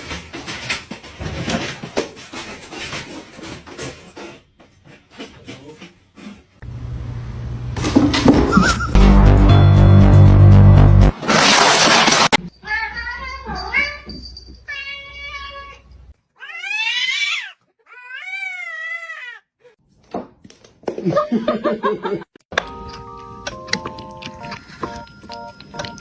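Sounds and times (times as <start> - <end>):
cat meowing: 16.4 - 19.5.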